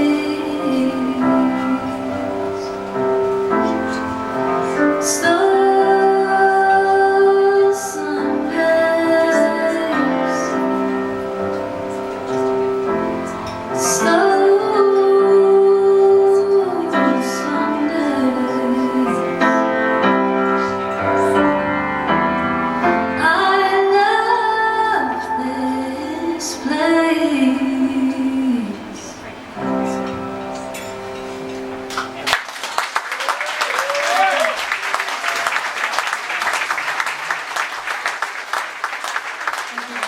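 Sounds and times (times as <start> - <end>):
woman singing: 0.0 - 2.9, 4.7 - 10.9, 13.7 - 20.2, 23.0 - 30.1
instrumental accompaniment: 0.0 - 32.5.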